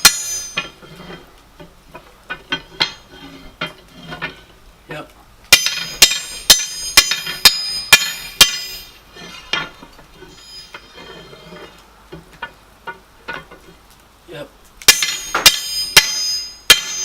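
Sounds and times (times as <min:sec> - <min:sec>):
hammer striking metal on anvil: 0:00.0 - 0:00.8, 0:05.5 - 0:09.8, 0:14.9 - 0:17.0.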